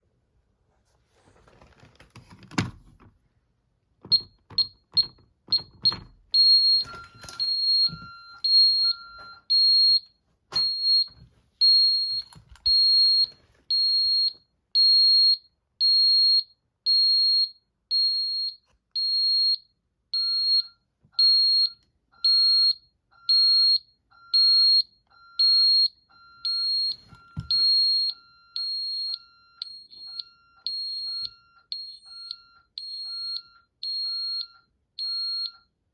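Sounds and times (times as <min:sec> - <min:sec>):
alarm keypad beeping: 0:04.1 - 0:19.6, 0:20.2 - 0:35.8.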